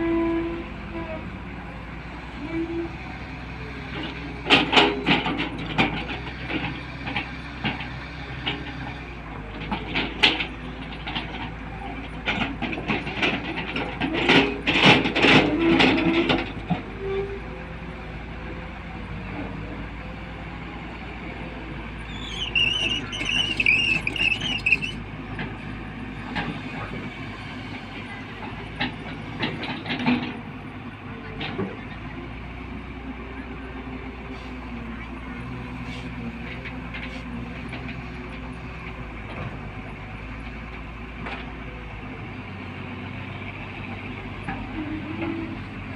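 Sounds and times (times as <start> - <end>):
excavator engine rumble: 0.0 - 45.9
high wavering squeal: 22.1 - 25.0.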